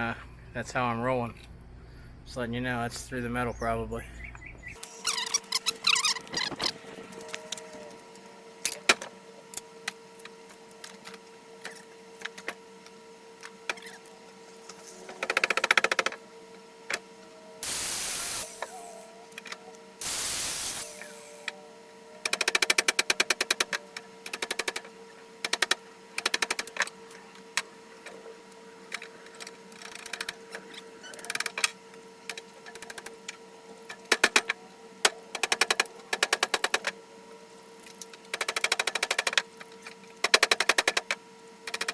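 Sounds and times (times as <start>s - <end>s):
air hissing: 17.6s - 18.9s, 20.0s - 21.4s.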